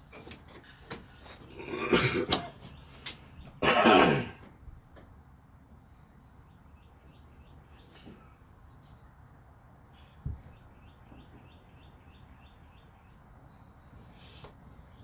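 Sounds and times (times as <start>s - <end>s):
man clearing his throat: 1.6s - 2.6s, 3.6s - 4.4s.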